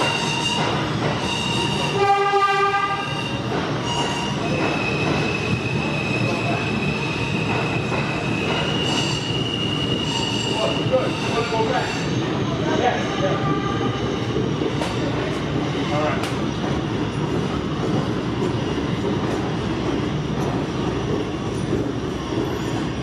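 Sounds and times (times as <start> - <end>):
subway wheels squealing on rails: 0.0 - 23.0
short train horn note: 1.9 - 3.1.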